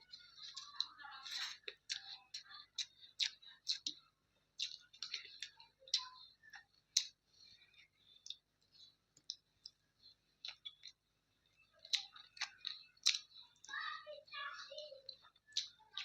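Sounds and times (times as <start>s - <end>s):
wet mouth chewing clicks: 0.1s - 9.8s, 10.4s - 11.0s, 11.8s - 13.7s, 15.1s - 16.0s.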